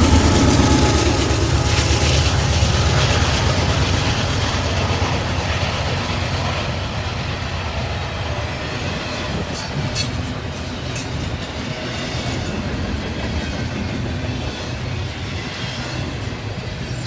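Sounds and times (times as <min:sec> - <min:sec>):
freight train wheels rumbling: 0:00.0 - 0:17.0.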